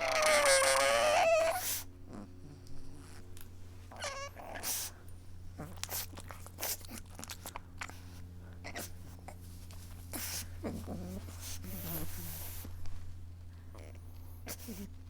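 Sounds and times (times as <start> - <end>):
dog whimpering: 0.0 - 2.3, 3.9 - 4.9
steady low hum: 0.0 - 15.0
dog sniffing: 4.0 - 13.1, 13.8 - 15.0.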